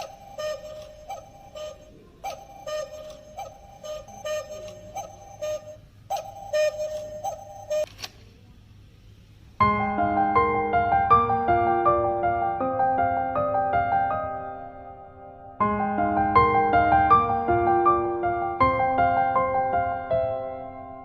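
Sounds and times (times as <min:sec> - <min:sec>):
cuckoo clock call: 0:00.0 - 0:07.9
piano music: 0:00.0 - 0:07.9, 0:09.6 - 0:21.0.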